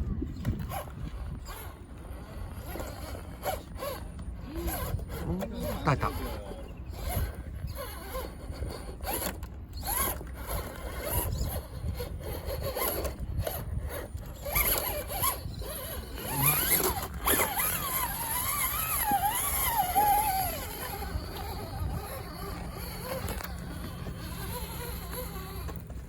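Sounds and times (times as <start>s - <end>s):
electric motor whirring and clicking: 0.2s - 26.0s
wavering whine: 14.0s - 26.0s.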